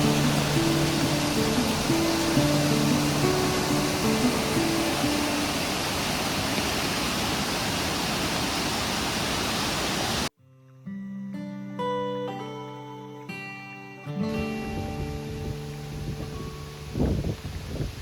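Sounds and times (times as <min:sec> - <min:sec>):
gentle acoustic guitar music: 0:00.0 - 0:05.6, 0:10.4 - 0:17.6
waterfall rushing: 0:00.0 - 0:10.3.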